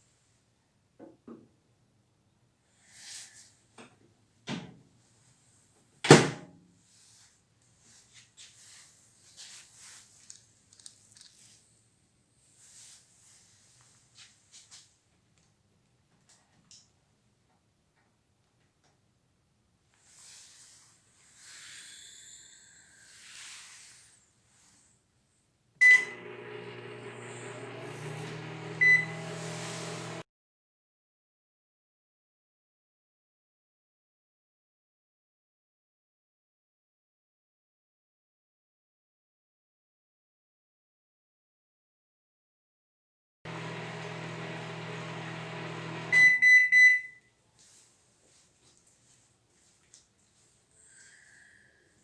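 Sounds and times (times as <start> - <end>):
microwave beep: 25.8 - 30.2, 43.5 - 47.3
microwave humming: 25.8 - 30.2, 43.5 - 47.1.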